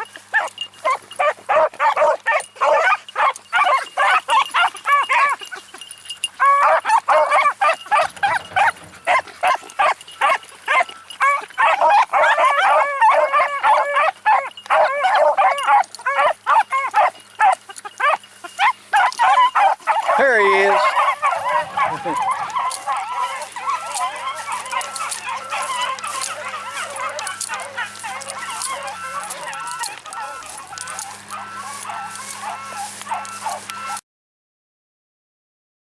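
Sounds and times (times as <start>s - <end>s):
dogs baying: 0.0s - 34.0s
low machine hum: 8.0s - 10.5s, 20.1s - 34.0s.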